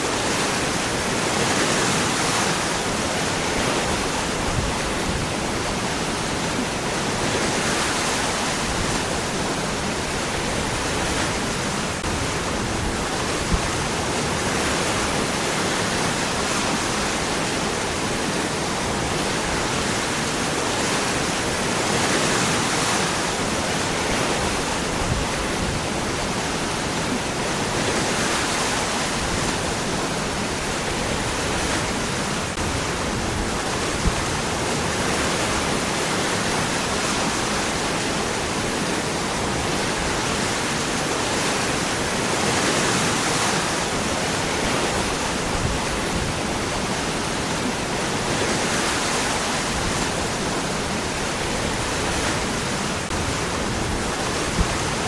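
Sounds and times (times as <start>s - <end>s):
waterfall rushing over rocks: 0.0s - 55.0s.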